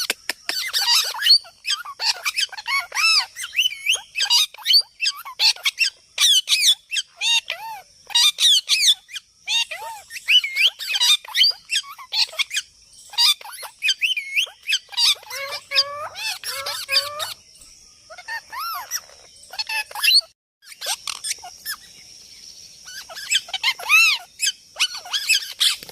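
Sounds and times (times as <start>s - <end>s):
parrot squawks and whistles: 22.9s - 25.8s.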